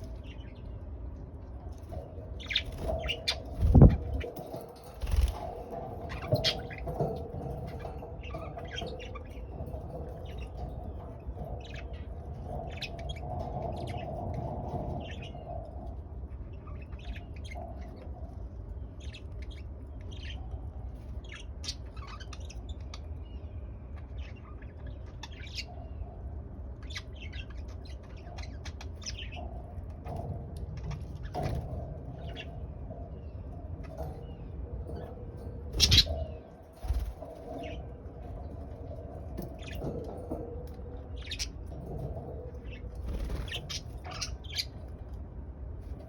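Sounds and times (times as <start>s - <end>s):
budgerigars chirping: 35.7s - 37.8s, 42.6s - 44.8s.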